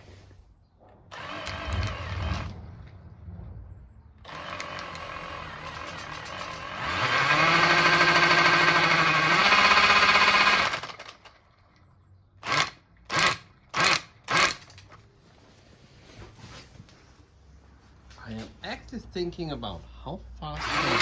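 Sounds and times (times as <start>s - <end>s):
small electric motor whirring: 1.1s - 2.6s, 4.3s - 11.3s, 20.6s - 21.0s.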